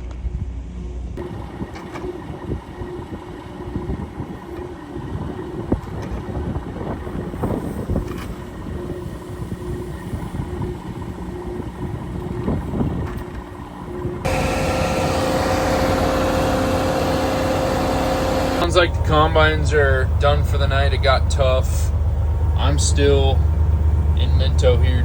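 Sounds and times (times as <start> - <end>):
vehicle engine rumbling: 14.2 - 25.0.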